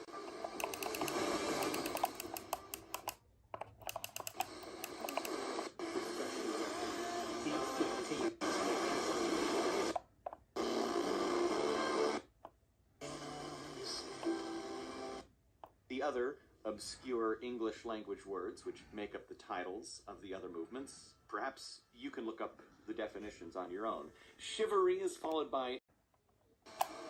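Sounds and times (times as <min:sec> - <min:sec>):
radio playing music: 0:00.0 - 0:03.1, 0:03.8 - 0:10.0, 0:13.0 - 0:15.2
rapid clicking: 0:00.0 - 0:05.7.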